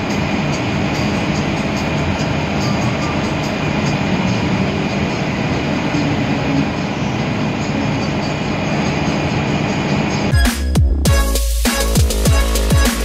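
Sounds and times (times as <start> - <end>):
bus engine and road noise: 0.0 - 10.3.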